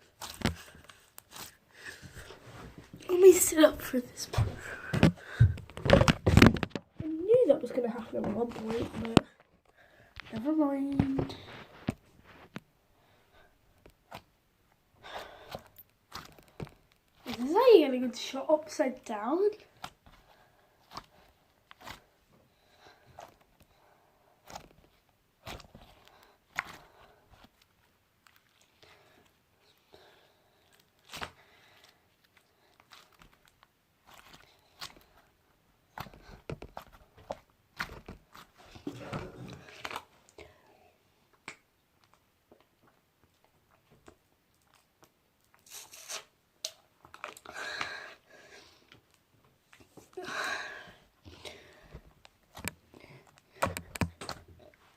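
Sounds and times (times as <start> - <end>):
slime squishing: 0.0 - 2.4, 3.1 - 9.3, 13.9 - 14.4, 15.2 - 40.4
slime squished by hand: 15.5 - 17.5, 19.8 - 22.1, 24.4 - 28.8
wet crackles and pops: 15.5 - 17.6, 30.6 - 35.3, 41.4 - 47.6.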